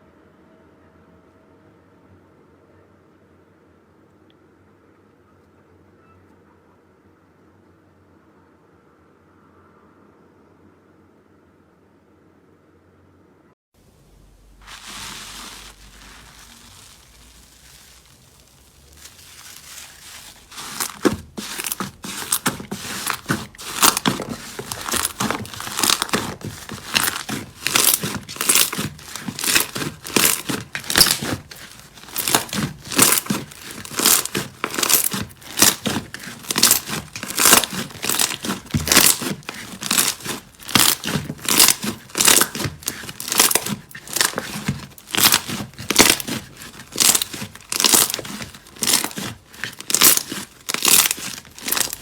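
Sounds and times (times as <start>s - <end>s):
soft hiss: 13.8s - 20.4s.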